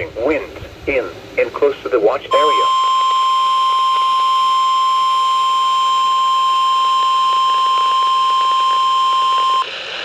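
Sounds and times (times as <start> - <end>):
steady electronic alarm tone: 2.3 - 9.6.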